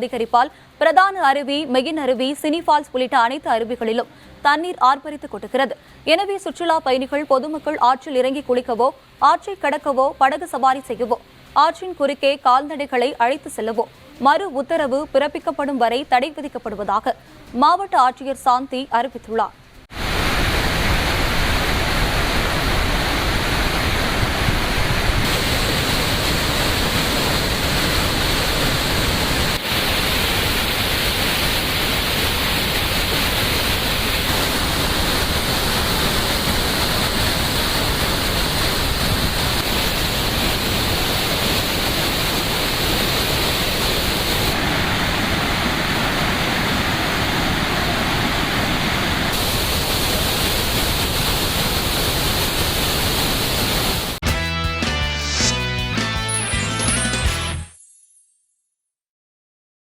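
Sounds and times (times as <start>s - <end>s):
rushing water over waterfalls: 20.0s - 54.2s.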